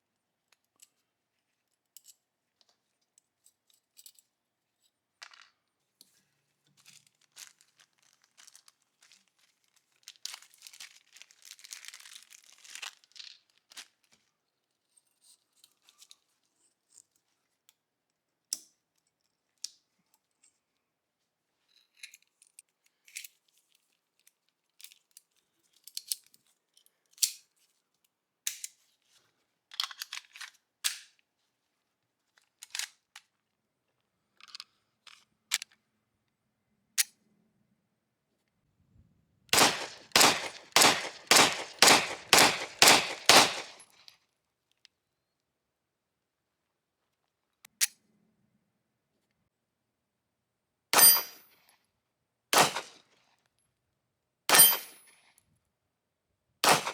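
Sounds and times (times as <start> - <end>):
metallic clicks of pistol: 39.6 - 43.8, 52.6 - 53.0
pistol shots: 39.6 - 43.8, 52.6 - 52.9, 54.5 - 54.9, 56.6 - 56.9.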